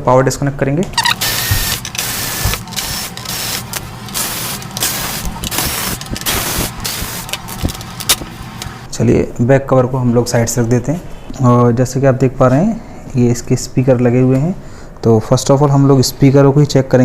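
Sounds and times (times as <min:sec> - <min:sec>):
electric screwdriver whirring: 0:01.0 - 0:08.7.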